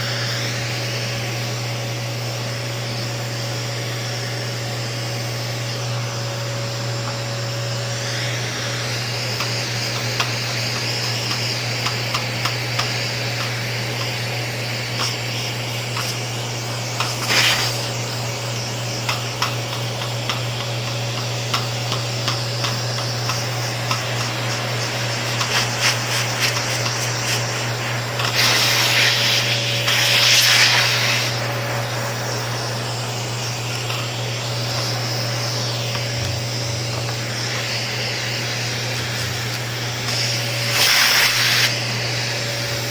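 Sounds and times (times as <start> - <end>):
vacuum cleaner running: 0.0 - 42.9
nozzle tapping against fan: 9.3 - 14.2, 19.0 - 28.4.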